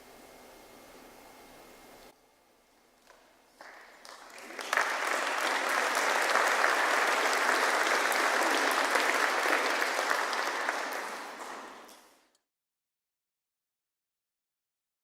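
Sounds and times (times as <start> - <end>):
congregation applauding: 3.6 - 12.2.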